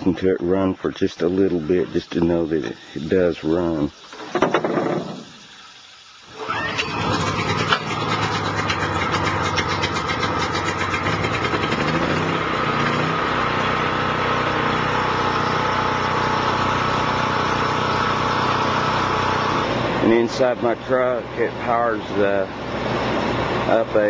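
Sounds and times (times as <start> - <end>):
generator engine running: 6.2 - 24.0.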